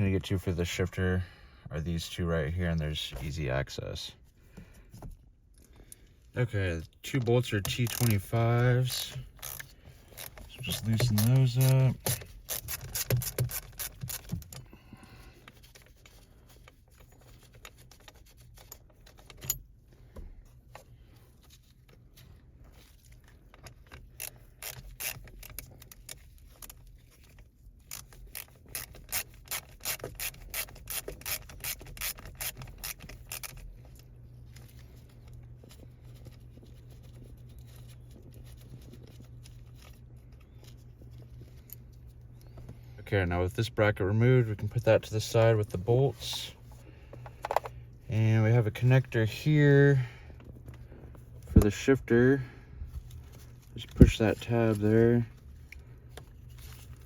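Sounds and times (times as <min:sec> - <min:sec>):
low steady hum: 0:00.0 - 0:57.0
hand ratchet clicking: 0:07.6 - 0:14.6, 0:23.9 - 0:26.7, 0:27.8 - 0:33.6.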